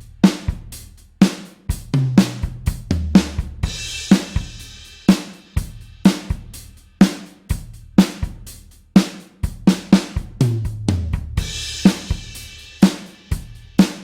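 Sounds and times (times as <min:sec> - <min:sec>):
rock drum kit beat: 0:00.0 - 0:14.0.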